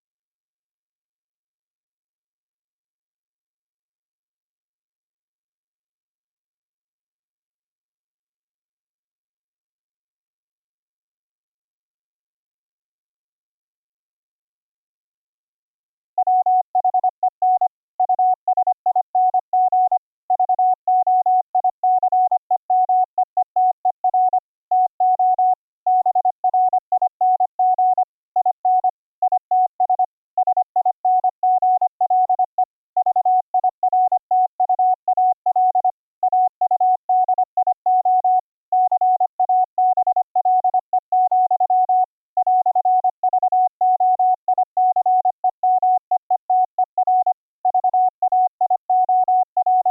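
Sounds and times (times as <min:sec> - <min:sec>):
morse code tone: 0:16.2 - 0:49.9.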